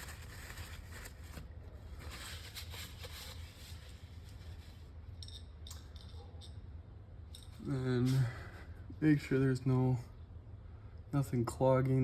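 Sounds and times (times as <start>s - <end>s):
paper towel rustling and rubbing: 0.0s - 4.8s
steady low hum: 0.0s - 12.0s.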